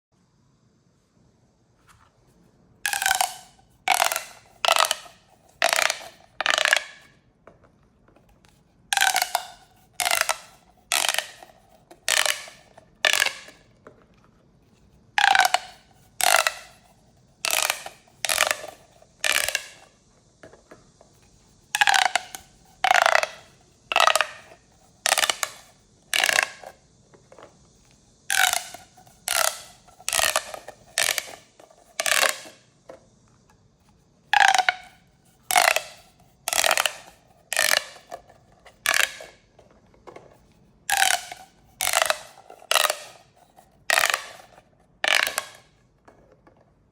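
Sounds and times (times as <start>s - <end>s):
plastic pop tubes zipping: 2.8s - 7.1s, 8.9s - 13.7s, 15.2s - 32.7s, 34.3s - 39.5s, 40.9s - 45.8s.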